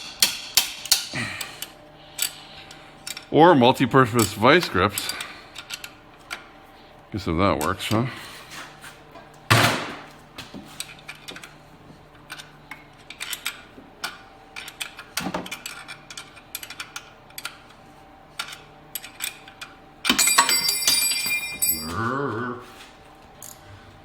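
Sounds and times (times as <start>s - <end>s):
hand tools clanking on metal: 20.1s - 22.1s.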